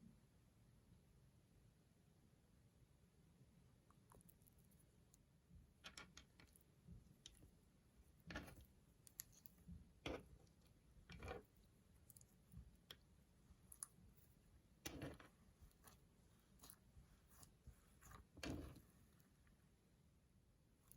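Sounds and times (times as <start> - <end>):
slime squelching: 7.1 - 19.4.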